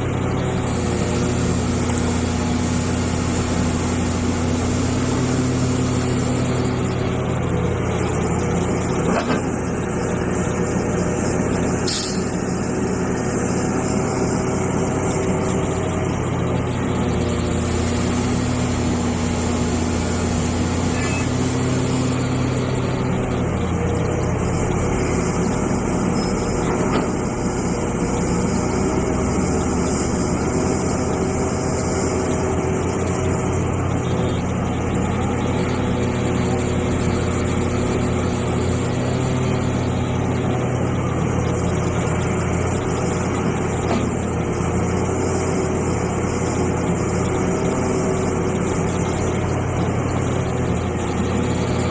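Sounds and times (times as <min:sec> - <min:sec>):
excavator diesel engine running: 0:00.0 - 0:51.9.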